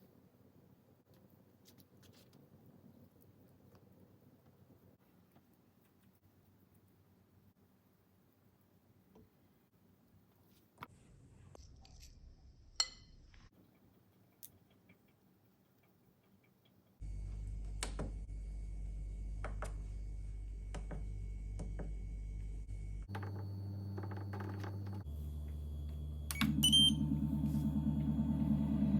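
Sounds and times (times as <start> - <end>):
steady electrical hum: 17.0 - 28.9.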